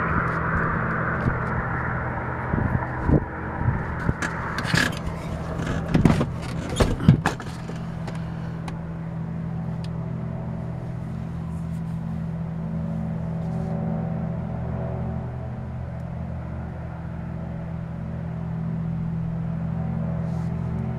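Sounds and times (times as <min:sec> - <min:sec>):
low industrial hum: 0:00.0 - 0:20.9
knocks and bumps: 0:04.0 - 0:08.8.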